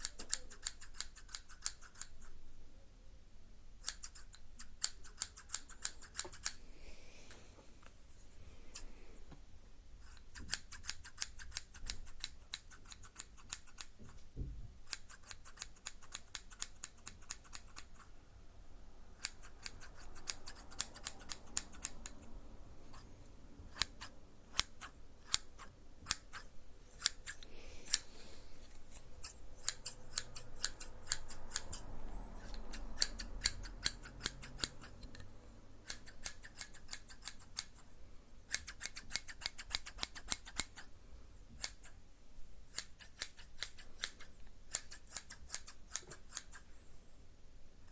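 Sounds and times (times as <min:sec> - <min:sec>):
rapid sharp clicks or snips: 0:14.9 - 0:18.1, 0:19.2 - 0:22.2, 0:38.5 - 0:40.9, 0:42.7 - 0:46.6.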